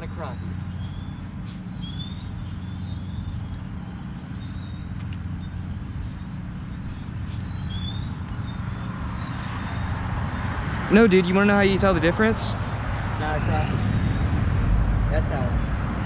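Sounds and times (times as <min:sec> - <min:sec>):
bird chirping: 0:00.0 - 0:10.5
engine humming: 0:00.0 - 0:16.0.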